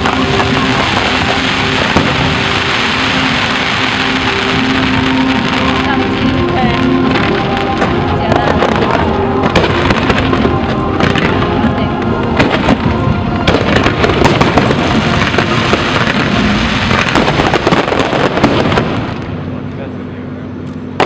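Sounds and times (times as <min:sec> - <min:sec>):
music playing: 0:00.0 - 0:18.8
fireworks bursting and crackling: 0:00.0 - 0:19.7.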